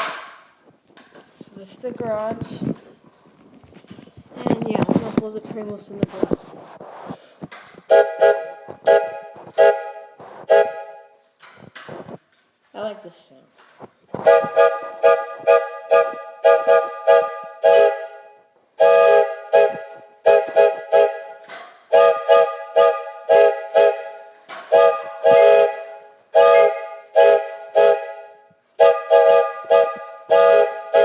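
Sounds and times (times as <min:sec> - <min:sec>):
train whistle toots and blasts: 0:07.9 - 0:11.2, 0:14.2 - 0:31.0.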